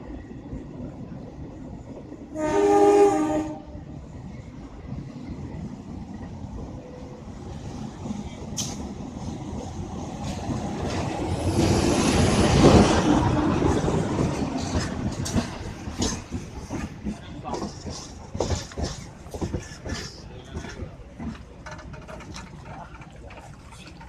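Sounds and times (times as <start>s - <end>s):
train rumble: 0.0s - 24.0s.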